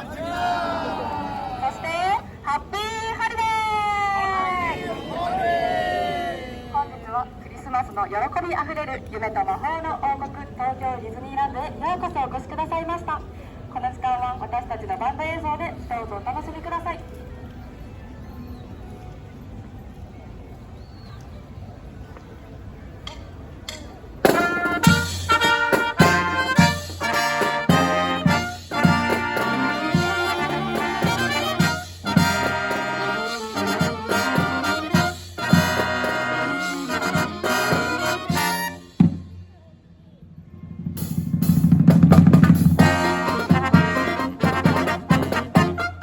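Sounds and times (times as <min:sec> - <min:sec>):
drum hits: 0:23.7 - 0:30.1, 0:41.0 - 0:45.8
brass marching band fanfare: 0:24.2 - 0:39.4, 0:41.0 - 0:46.0.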